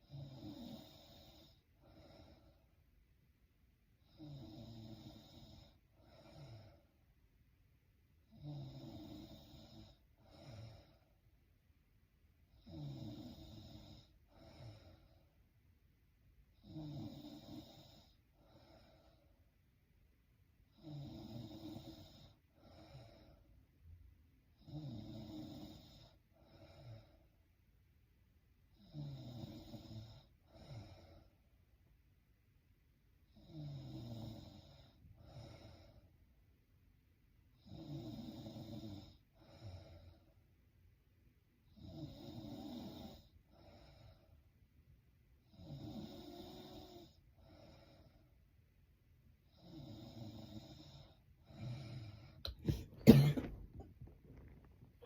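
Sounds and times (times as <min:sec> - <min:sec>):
woman snoring faintly: 0:51.6 - 0:55.0.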